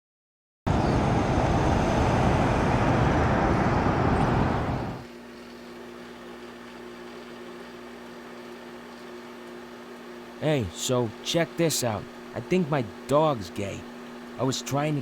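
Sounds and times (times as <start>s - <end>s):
loud steady rushing noise: 0.7s - 5.1s.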